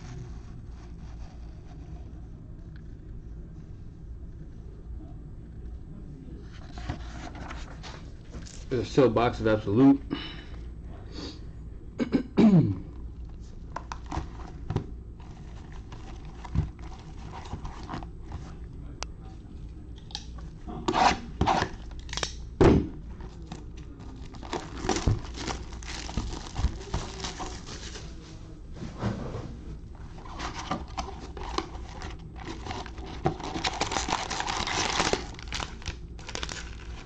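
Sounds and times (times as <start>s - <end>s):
packaging crinkling and scraping: 13.7s - 18.6s, 23.2s - 28.4s, 30.0s - 37.0s.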